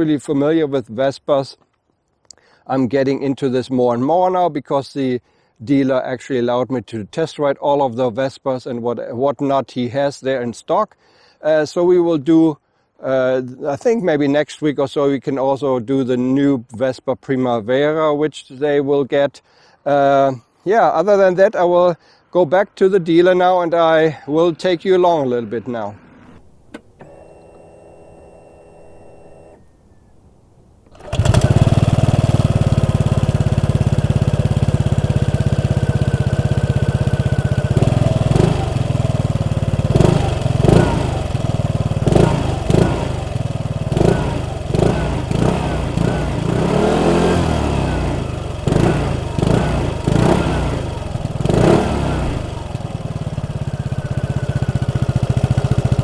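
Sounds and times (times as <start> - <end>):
scooter engine idling and revving: 31.0 - 56.0.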